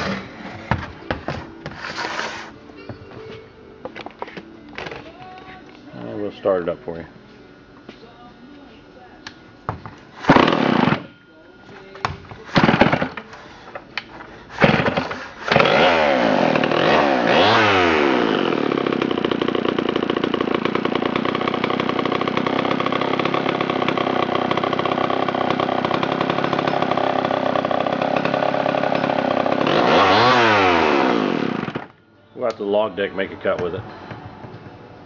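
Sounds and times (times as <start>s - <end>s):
chainsaw engine starting and revving: 0.0s - 0.6s, 10.2s - 11.1s, 12.5s - 13.2s, 14.5s - 31.9s
chainsaw idling: 0.0s - 2.5s, 10.2s - 11.1s, 12.4s - 13.6s, 14.5s - 32.0s.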